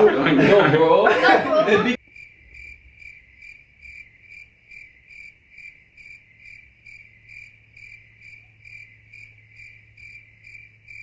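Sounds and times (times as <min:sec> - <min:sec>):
cricket chirping: 0:02.0 - 0:11.0.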